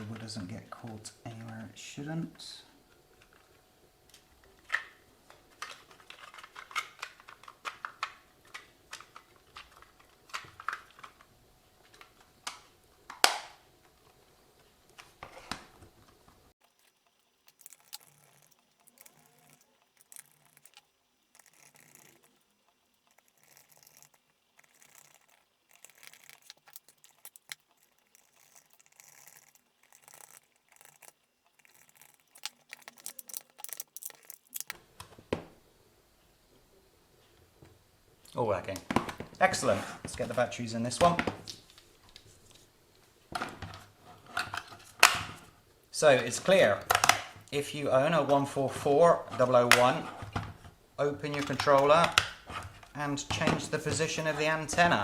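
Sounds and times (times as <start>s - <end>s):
faint scraping and tapping: 16.6s - 34.8s.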